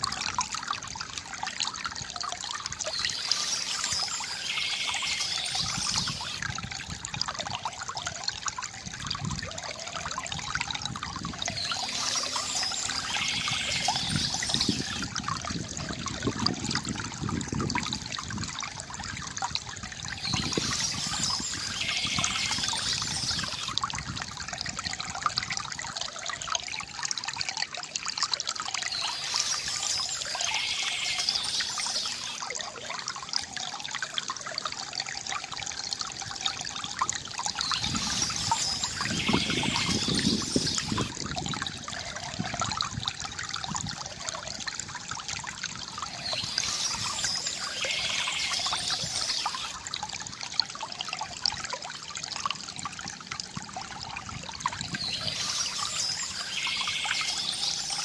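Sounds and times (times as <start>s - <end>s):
water trickling into basin: 0.0s - 58.0s
birds chirping: 2.9s - 6.4s, 11.5s - 15.0s, 20.2s - 23.7s, 28.9s - 32.4s, 37.5s - 41.1s, 46.1s - 49.7s, 54.8s - 58.0s.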